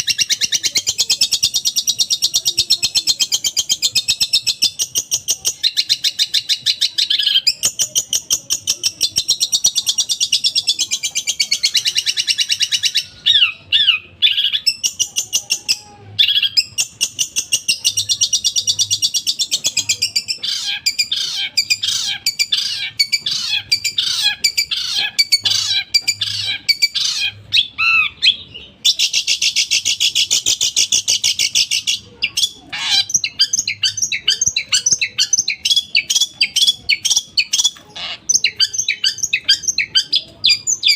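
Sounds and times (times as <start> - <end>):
shrike singing harsh rattling song: 0.0 - 28.2.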